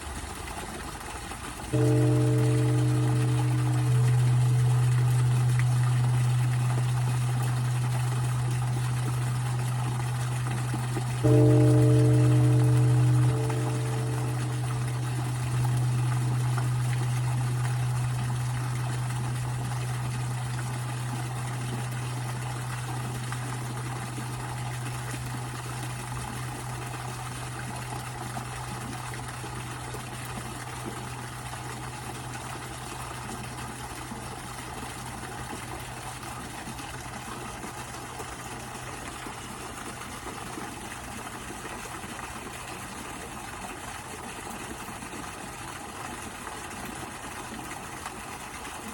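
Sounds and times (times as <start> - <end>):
low hum: 1.7 - 36.2.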